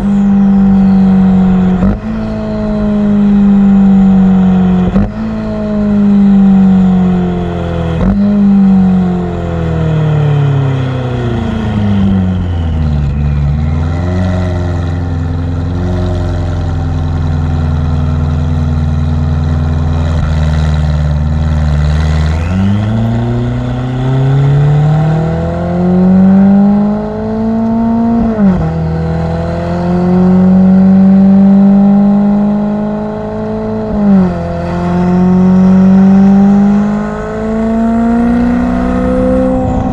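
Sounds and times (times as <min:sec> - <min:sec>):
car engine revving: 0:00.0 - 0:39.9
turbo whistle: 0:09.9 - 0:15.4.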